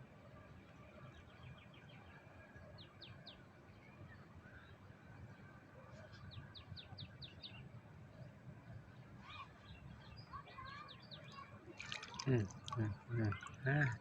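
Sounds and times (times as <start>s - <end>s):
low outdoor background noise: 0.0s - 14.0s
birds chirping: 10.2s - 14.0s.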